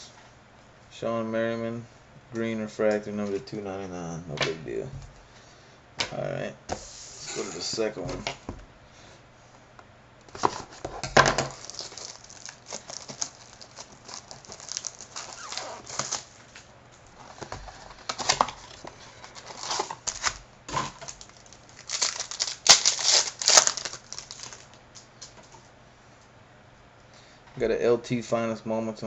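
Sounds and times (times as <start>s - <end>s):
wrapper crinkling and tearing: 10.4s - 25.0s.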